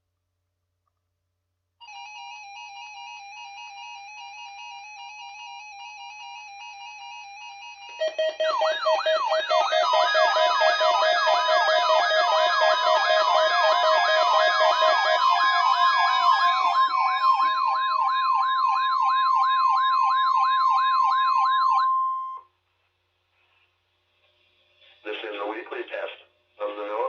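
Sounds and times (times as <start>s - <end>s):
warbling alarm tone: 3.4s - 22.4s
other tones and music: 7.8s - 22.4s.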